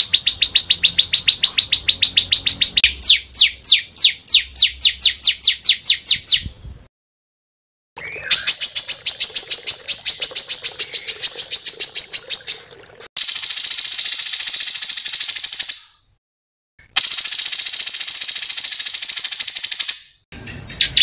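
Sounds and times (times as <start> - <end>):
songbirds downward high notes: 0.0 - 6.5, 8.0 - 12.7
bird high rapid trill: 8.0 - 16.2, 17.0 - 21.0.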